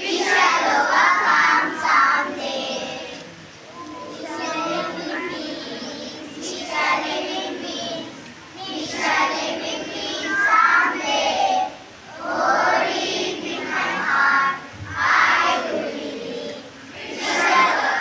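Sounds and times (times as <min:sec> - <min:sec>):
children singing: 0:00.0 - 0:18.0.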